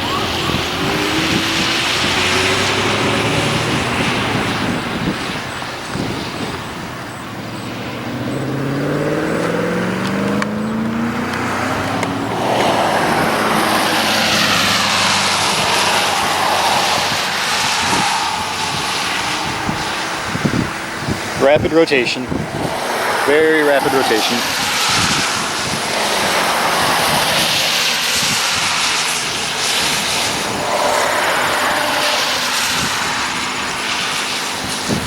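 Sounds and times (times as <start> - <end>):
road and wind noise: 0.0 - 35.0
vehicle engine speeding up: 0.0 - 35.0.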